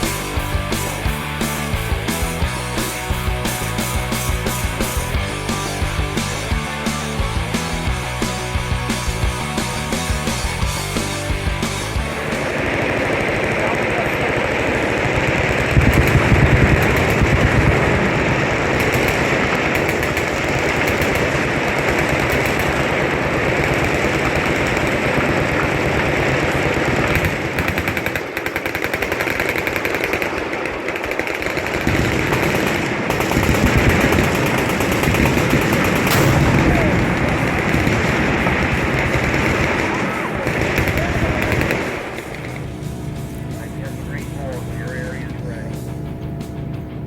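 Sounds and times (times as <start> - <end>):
automatic machine gun fire: 8.2 - 45.3.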